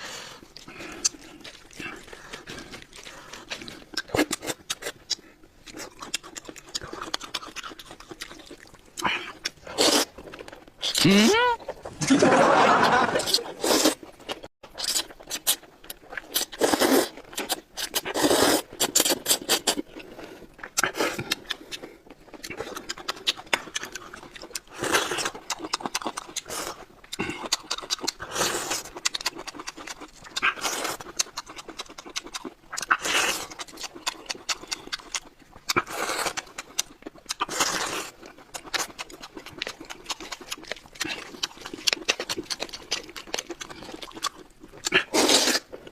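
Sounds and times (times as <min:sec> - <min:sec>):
wet chewing and smacking: 0:00.0 - 0:45.9
noodles being slurped: 0:05.9 - 0:22.5, 0:32.8 - 0:45.9.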